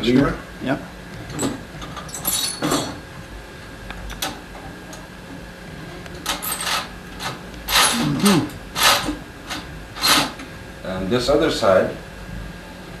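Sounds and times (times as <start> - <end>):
small metal parts clinking: 1.4 - 3.0.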